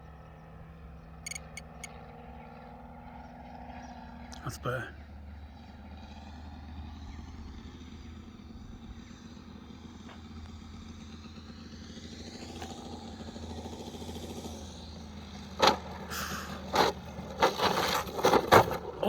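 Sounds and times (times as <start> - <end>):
model plane engine running: 4.9 - 19.0.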